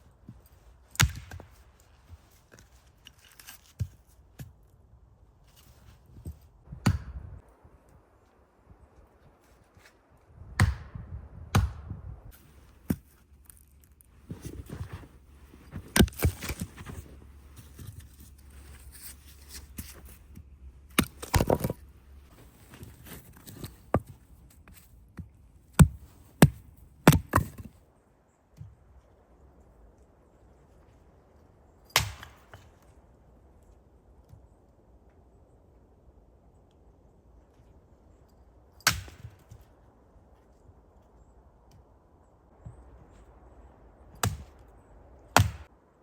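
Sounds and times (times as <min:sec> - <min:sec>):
sharp chopping knocks: 0:10.6 - 0:11.9.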